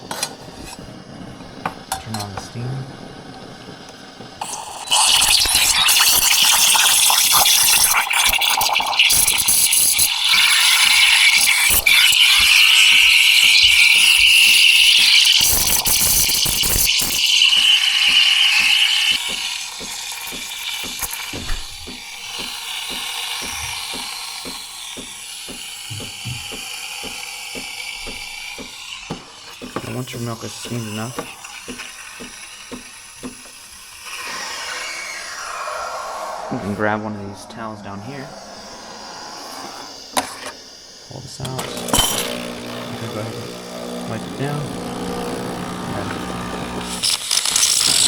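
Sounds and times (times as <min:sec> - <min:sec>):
steam wand hissing in milk: 0:00.0 - 0:48.0
pump pulsing knock: 0:05.9 - 0:30.3, 0:31.1 - 0:33.6, 0:41.5 - 0:48.0.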